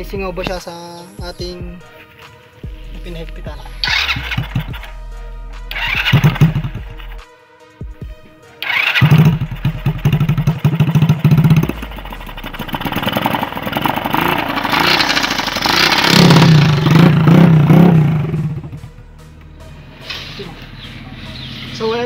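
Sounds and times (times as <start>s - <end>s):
motorcycle engine revving: 3.5s - 7.2s, 8.6s - 22.0s.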